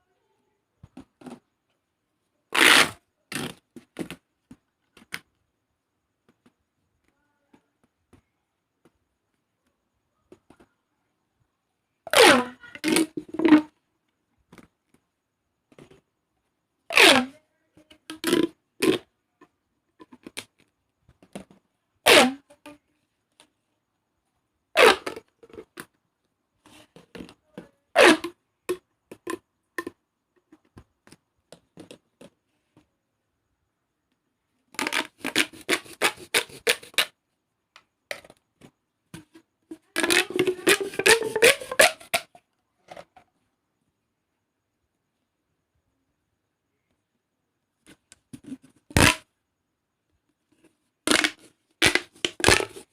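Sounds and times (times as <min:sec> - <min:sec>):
plastic pop tubes popping: 0:12.1 - 0:13.7, 0:16.9 - 0:17.3, 0:18.1 - 0:19.0, 0:24.8 - 0:25.9, 0:34.7 - 0:37.1, 0:39.2 - 0:43.0, 0:48.3 - 0:49.3, 0:51.1 - 0:52.9.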